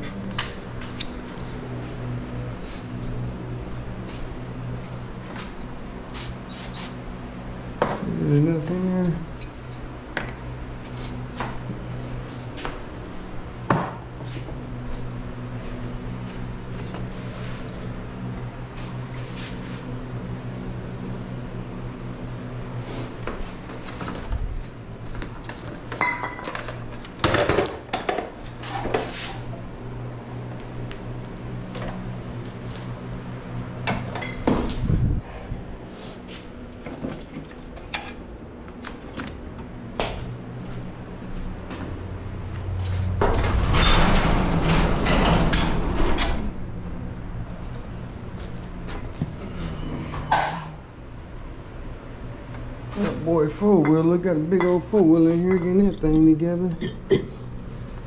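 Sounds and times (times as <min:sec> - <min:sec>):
low hum: 0:28.4 - 0:58.0.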